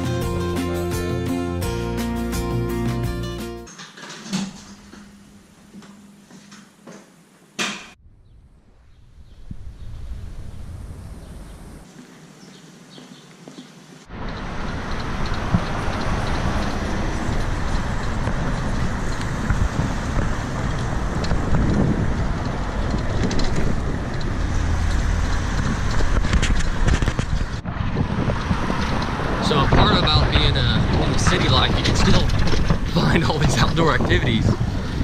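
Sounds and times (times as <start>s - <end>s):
city traffic rumble: 7.9s - 35.0s.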